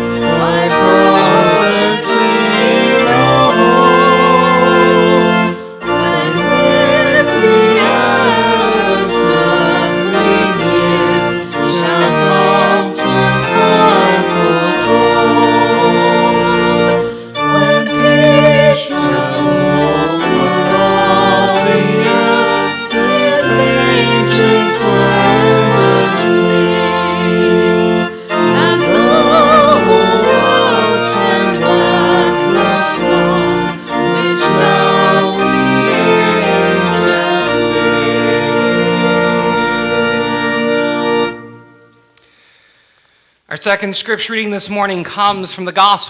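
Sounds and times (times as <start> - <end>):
music with sustained chords: 0.0 - 42.3.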